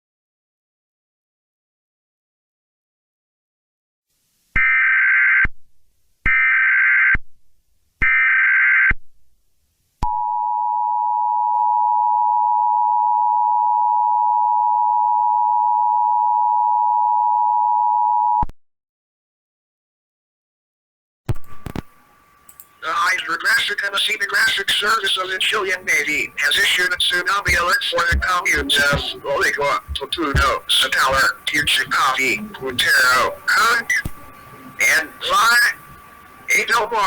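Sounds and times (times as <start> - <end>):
screeching digital data bursts: 23.1 - 35.8
two-tone attention signal: 26.6 - 34.0.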